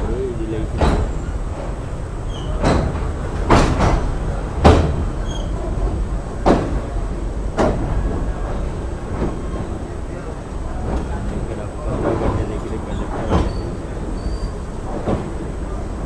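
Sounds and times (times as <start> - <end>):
train coach rumbling: 0.0 - 16.0
sharp knocks and clanks: 0.7 - 6.9, 7.5 - 8.2, 11.9 - 13.8.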